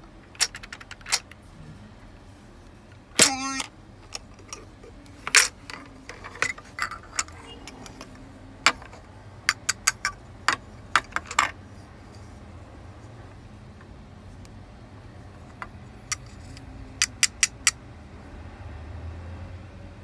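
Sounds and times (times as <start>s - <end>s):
plastic toy pieces clicking: 0.3s - 1.4s, 3.2s - 8.1s, 8.7s - 11.5s, 16.1s - 17.8s.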